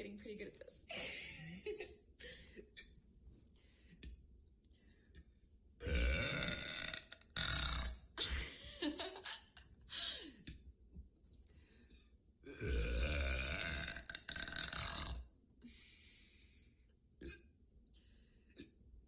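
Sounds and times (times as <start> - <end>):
woman burping loudly: 5.8 - 8.2, 12.4 - 15.2.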